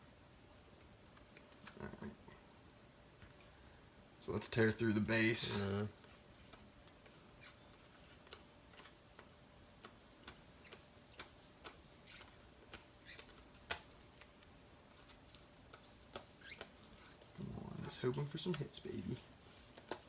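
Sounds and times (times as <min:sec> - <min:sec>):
cards flipped with soft clicks: 0:05.6 - 0:17.3, 0:18.4 - 0:20.0.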